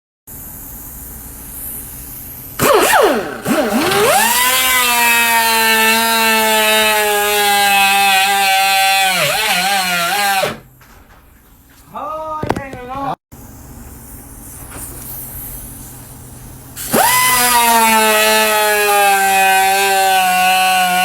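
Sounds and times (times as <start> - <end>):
engine revving: 2.6 - 10.6, 16.8 - 21.0.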